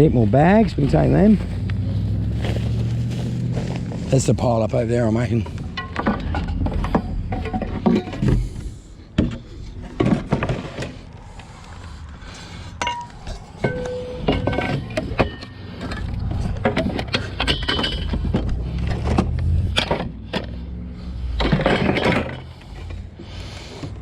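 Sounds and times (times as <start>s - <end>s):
junk knocking and clattering: 3.5s - 11.2s, 12.8s - 24.0s.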